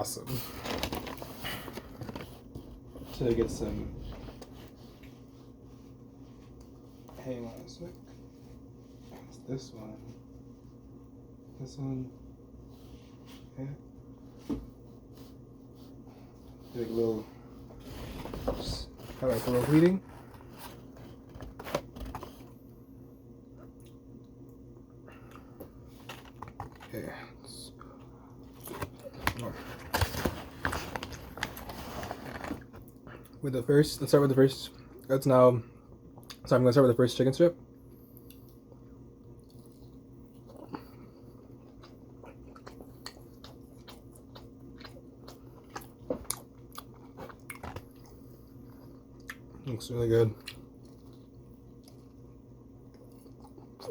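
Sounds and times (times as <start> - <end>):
faint low hum: 0.0 - 53.9
crunchy chewing: 38.1 - 49.7, 50.3 - 53.9.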